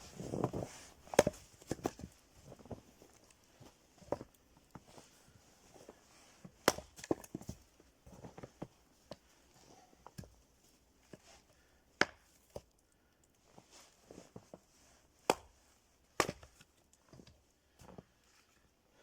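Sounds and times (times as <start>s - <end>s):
axe chopping firewood: 1.0s - 2.7s, 6.6s - 7.5s, 12.0s - 12.6s, 15.3s - 15.6s, 16.2s - 16.7s.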